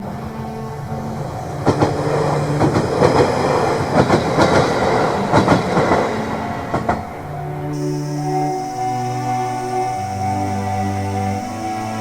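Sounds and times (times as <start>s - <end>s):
steady tone: 0.0s - 12.0s
train wheels clacking over rail joints: 1.6s - 7.3s.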